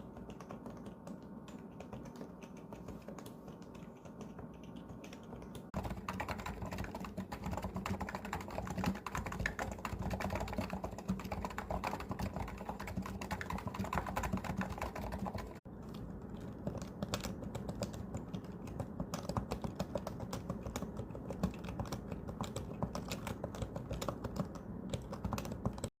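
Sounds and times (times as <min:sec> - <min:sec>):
fast keyboard typing: 0:00.0 - 0:25.9.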